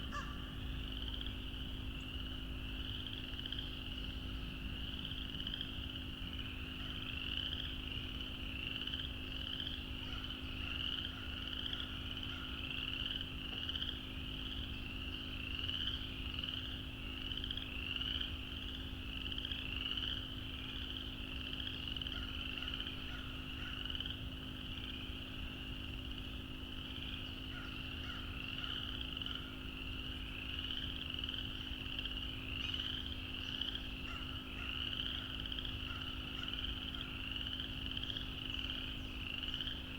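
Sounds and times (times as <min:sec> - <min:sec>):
chorus of frogs calling: 0:00.0 - 0:04.2, 0:04.8 - 0:39.9.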